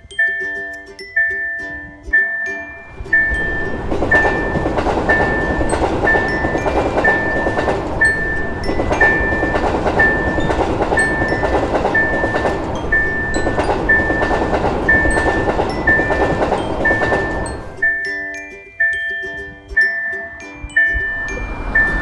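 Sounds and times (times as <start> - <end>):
crossing warning bell ringing: 0.0 - 22.0
dense continuous clatter: 3.2 - 18.0.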